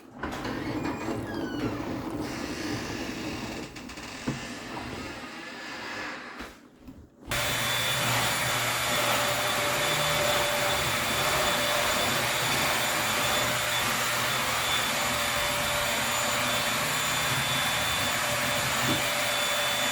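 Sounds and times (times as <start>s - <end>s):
dishwasher motor humming: 7.3s - 19.9s.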